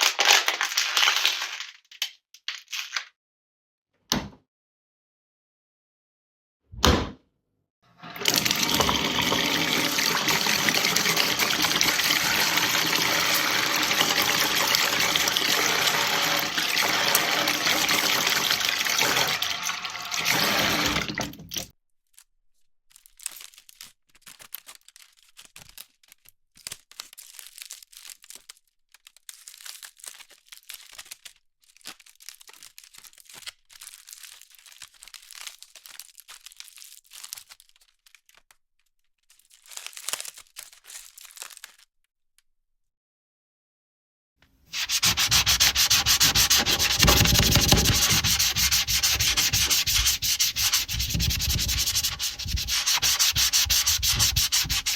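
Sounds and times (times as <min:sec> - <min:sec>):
packaging crinkling: 0:00.0 - 0:03.1, 0:22.9 - 0:42.0
kitchen tap running: 0:08.0 - 0:21.7, 0:44.8 - 0:54.9.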